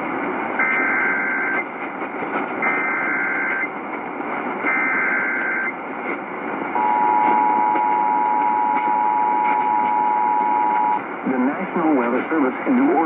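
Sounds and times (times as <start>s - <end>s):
radio static: 0.6s - 13.0s
two-tone warbling data bursts: 4.7s - 5.7s
steady two-tone attention signal: 6.8s - 11.0s.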